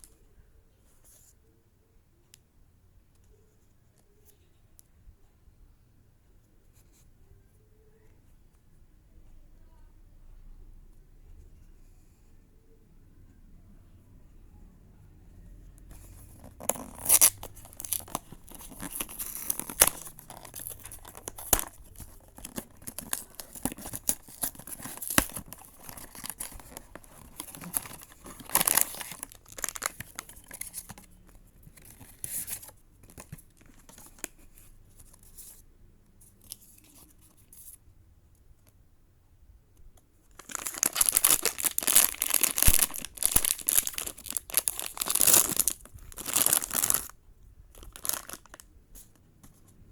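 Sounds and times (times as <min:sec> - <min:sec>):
packaging tearing and crinkling: 0:16.4 - 0:31.0, 0:40.3 - 0:47.1, 0:47.8 - 0:48.6.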